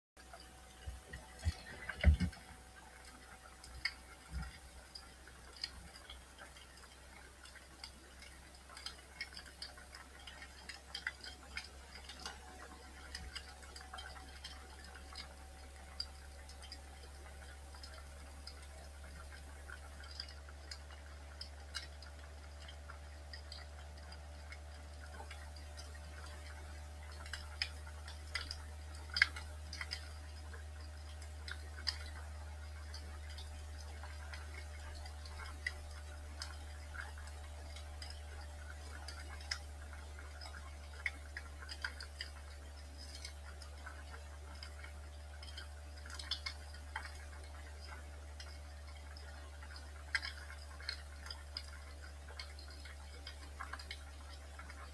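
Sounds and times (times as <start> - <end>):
steady low hum: 0.2 - 54.9
wood fire crackling: 0.2 - 54.9.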